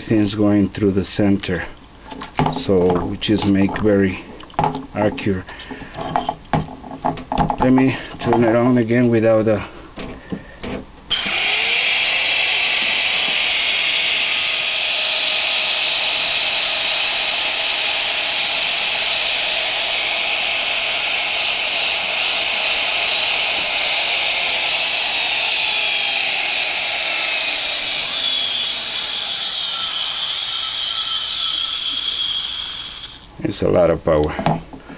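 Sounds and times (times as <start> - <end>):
router spindle high-pitched whine: 11.1 - 33.3.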